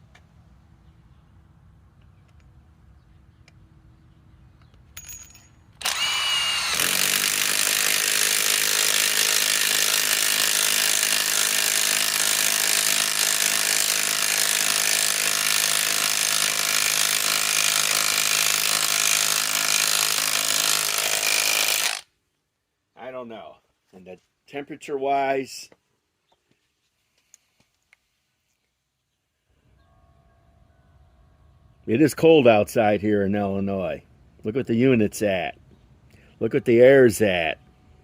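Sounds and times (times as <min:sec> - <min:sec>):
cordless impact wrench impacting: 0:05.0 - 0:22.1.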